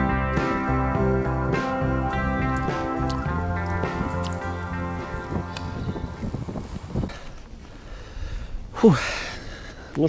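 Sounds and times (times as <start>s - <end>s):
background music: 0.0s - 7.1s
low rumbling outdoor noise: 0.0s - 8.8s.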